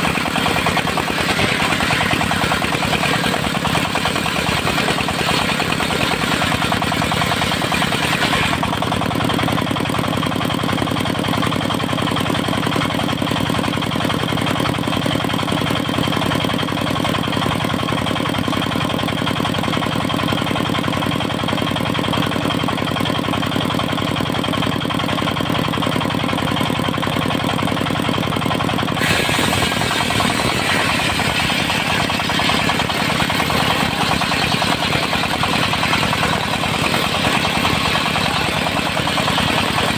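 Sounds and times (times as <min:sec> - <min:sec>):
saw rig engine running: 0:00.0 - 0:39.9
harsh hiss: 0:29.0 - 0:32.3.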